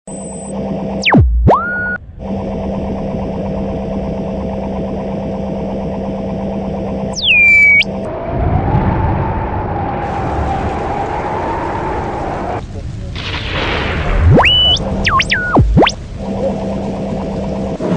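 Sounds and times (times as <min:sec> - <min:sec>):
steady electronic hum: 0:00.1 - 0:08.1, 0:14.2 - 0:17.9
rising synthetic tone: 0:00.1 - 0:09.2, 0:14.2 - 0:17.9
noisy wavering rumble: 0:00.3 - 0:13.0, 0:13.7 - 0:17.9
loud falling whistle: 0:07.1 - 0:11.8, 0:14.3 - 0:16.0.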